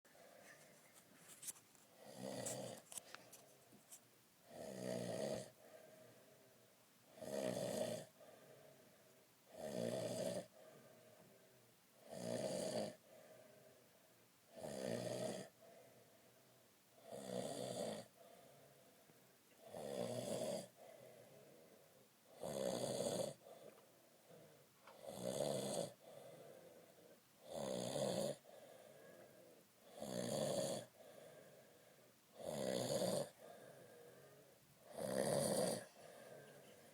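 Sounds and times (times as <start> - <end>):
quiet breathing: 0.1 - 36.9
man snoring: 2.0 - 2.8, 4.5 - 5.6, 7.1 - 8.2, 9.5 - 10.6, 12.0 - 13.0, 14.5 - 15.6, 17.0 - 18.2, 19.6 - 20.9, 22.3 - 23.7, 24.9 - 31.6, 32.4 - 34.2, 34.9 - 36.7.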